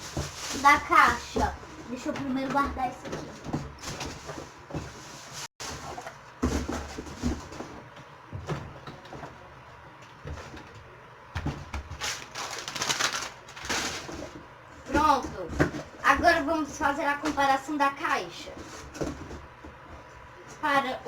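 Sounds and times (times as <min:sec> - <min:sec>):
rustling: 0:00.0 - 0:02.0, 0:03.8 - 0:07.6, 0:12.0 - 0:14.4.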